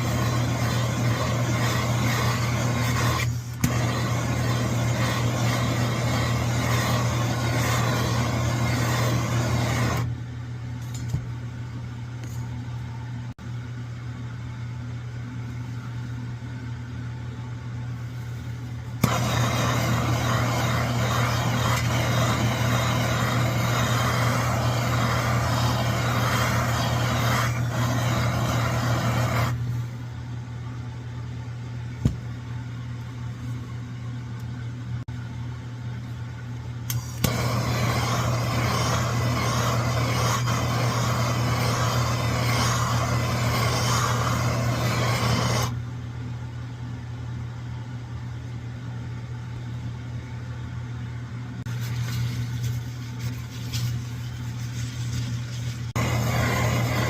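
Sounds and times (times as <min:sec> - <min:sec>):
camp stove burners hissing: 0:00.0 - 0:10.1, 0:19.0 - 0:29.8, 0:36.9 - 0:45.8, 0:53.9 - 0:57.0.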